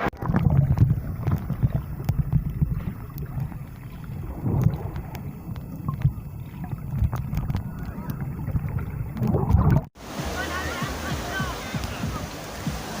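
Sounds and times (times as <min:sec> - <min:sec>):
wind buffeting microphone: 0:00.0 - 0:09.9.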